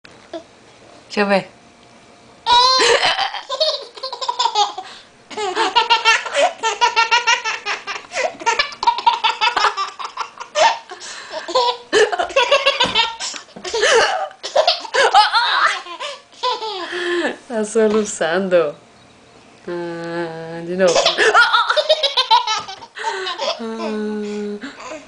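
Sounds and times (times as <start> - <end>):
person laughing hard: 2.6 - 3.6, 5.3 - 16.2.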